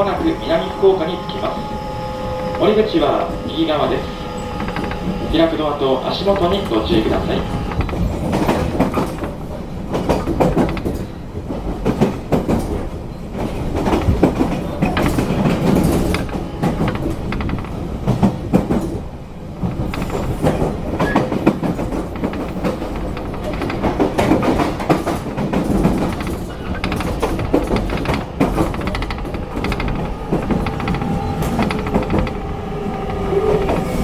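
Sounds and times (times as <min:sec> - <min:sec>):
train running rumble: 0:00.0 - 0:34.0
wheels clicking over rail joints: 0:00.0 - 0:34.0
wheel squeal: 0:28.7 - 0:34.0.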